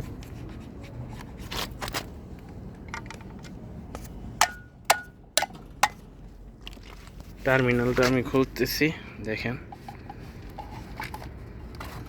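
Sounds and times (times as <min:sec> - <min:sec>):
tool clicking and knocking on metal: 0:04.4 - 0:06.0.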